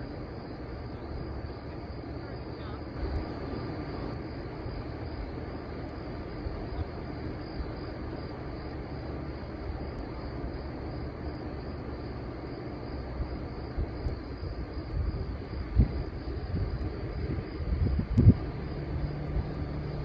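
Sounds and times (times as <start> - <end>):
outdoor background rumble: 0.0 - 20.0.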